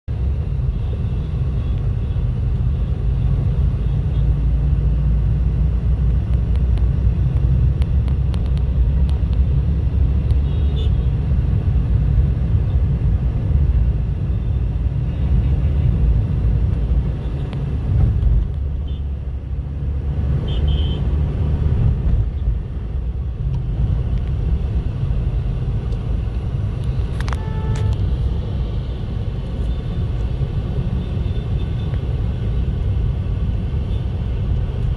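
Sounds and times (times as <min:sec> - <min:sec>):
road traffic rumble: 0:00.1 - 0:34.9
horn tone: 0:27.3 - 0:28.0.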